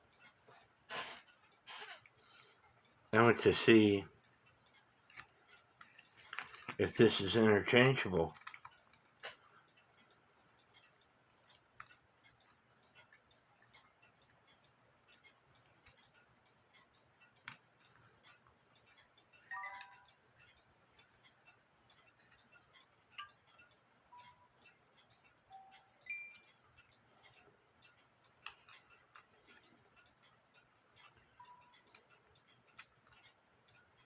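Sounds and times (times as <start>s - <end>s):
music box comb notes ringing: 19.4s - 20.2s, 25.5s - 26.6s.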